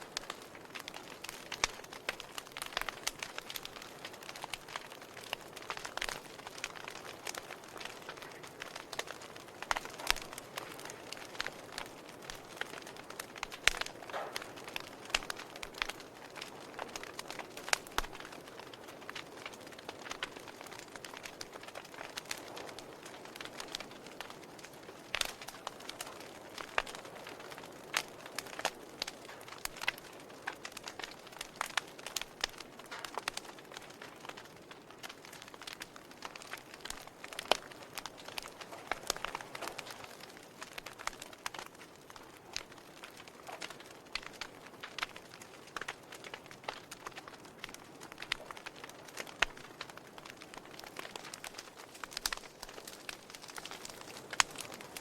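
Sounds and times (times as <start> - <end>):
logs crackling in fireplace: 0.0 - 55.0.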